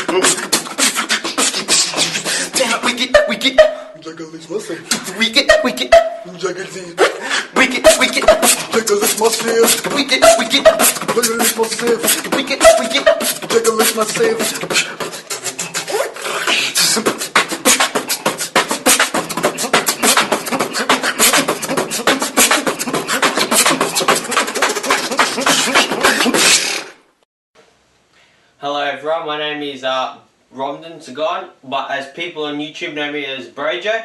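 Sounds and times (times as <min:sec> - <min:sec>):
hummed voiced tones: 0:00.0 - 0:03.9, 0:04.9 - 0:26.6
beatboxing vocal percussion: 0:00.0 - 0:27.0.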